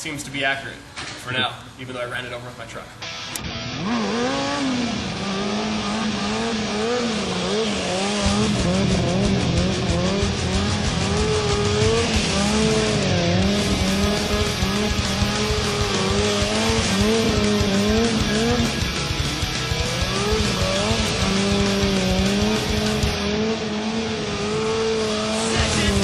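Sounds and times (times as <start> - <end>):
motorcycle engine under throttle: 3.7 - 26.0.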